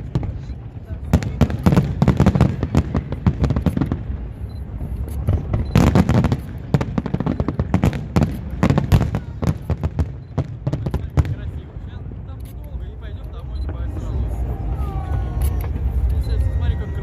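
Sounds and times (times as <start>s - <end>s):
continuous low rumble: 0.0s - 17.0s
fireworks bangs and crackles: 0.0s - 17.0s.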